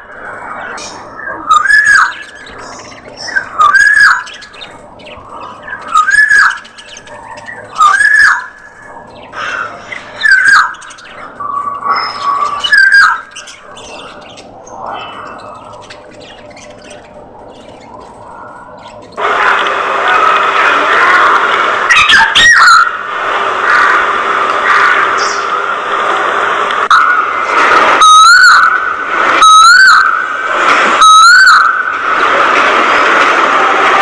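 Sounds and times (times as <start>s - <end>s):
budgerigar loud calls: 0.8s - 19.3s, 21.9s - 23.0s, 28.0s - 30.2s, 31.0s - 31.9s
budgerigars soft chattering: 1.5s - 19.2s.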